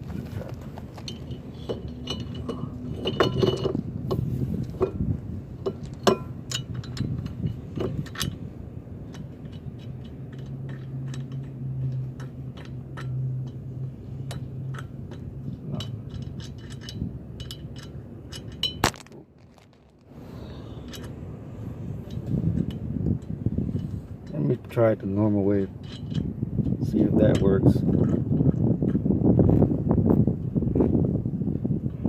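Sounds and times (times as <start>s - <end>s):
metal parts and tools clinking: 0.6s - 3.8s, 9.1s - 20.1s, 25.8s - 26.3s.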